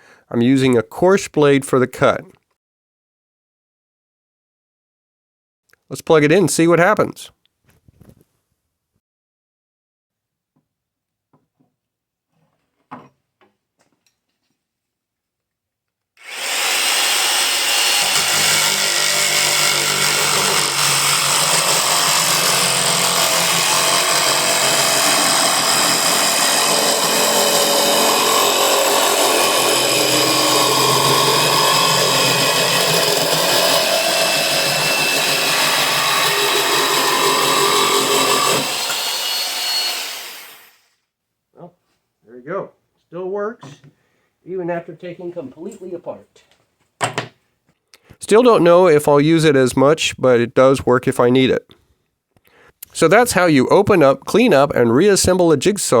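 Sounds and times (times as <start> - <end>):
electric jigsaw sawing plywood: 16.2 - 40.9.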